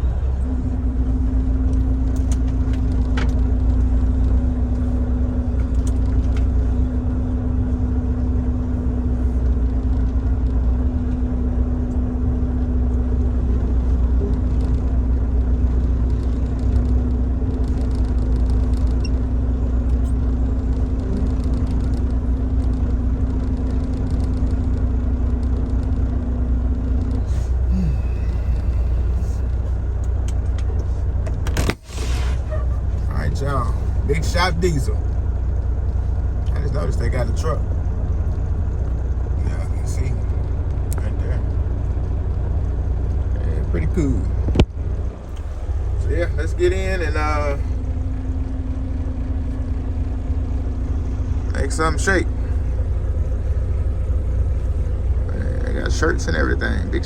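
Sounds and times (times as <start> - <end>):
diesel truck engine rumbling: 0.0 - 57.0
steady hum: 27.2 - 29.9.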